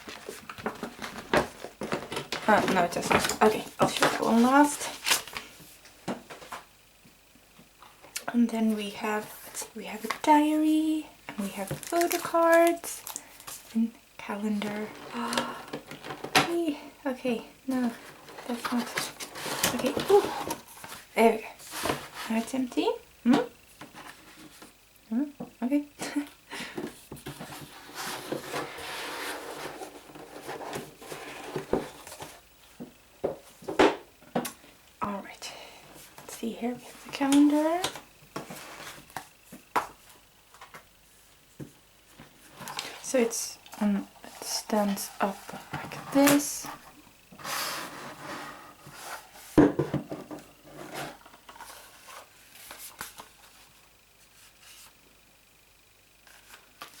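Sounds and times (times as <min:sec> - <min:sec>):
cardboard box rustling: 0:00.0 - 0:05.4, 0:11.6 - 0:13.7, 0:17.7 - 0:22.5, 0:27.2 - 0:32.4
paper rustling: 0:00.0 - 0:05.5, 0:50.8 - 0:54.9.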